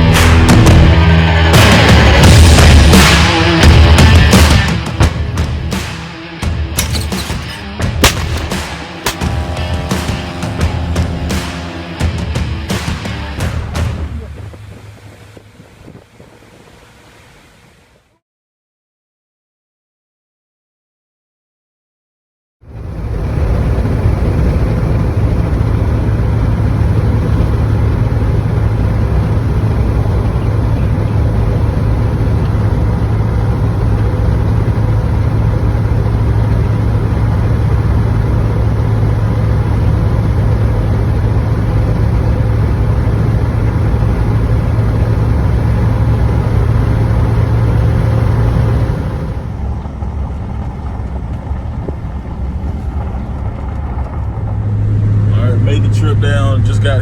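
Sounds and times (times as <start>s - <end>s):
vehicle engine and road drone: 0.0s - 18.2s, 22.6s - 57.0s.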